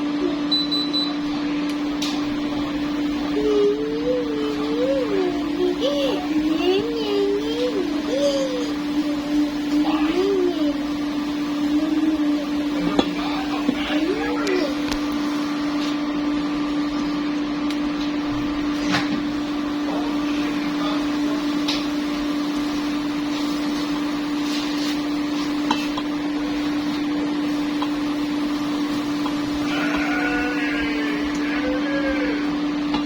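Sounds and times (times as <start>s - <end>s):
kitchen appliance motor humming: 0.0s - 33.0s.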